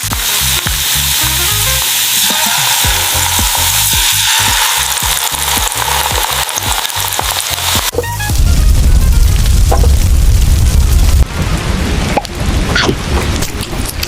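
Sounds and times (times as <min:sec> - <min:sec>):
low regular beat: 0:00.0 - 0:10.2
food sizzling in hot oil: 0:00.0 - 0:11.3.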